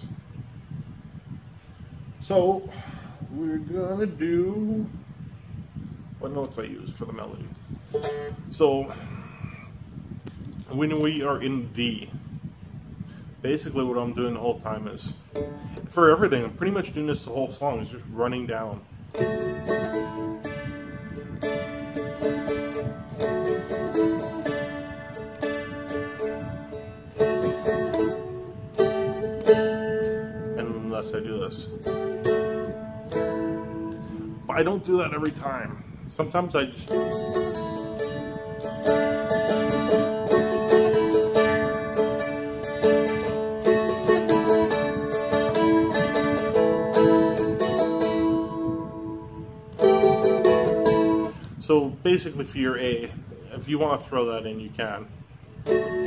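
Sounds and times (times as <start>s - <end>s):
strumstick melody picked: 7.9s - 8.4s, 15.3s - 15.9s, 19.1s - 34.6s, 36.8s - 51.4s, 55.6s - 56.0s.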